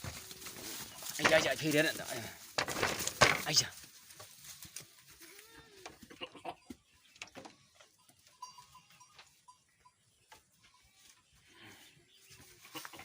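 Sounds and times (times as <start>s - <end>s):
goats moving knocks and rustles: 0.0s - 13.0s.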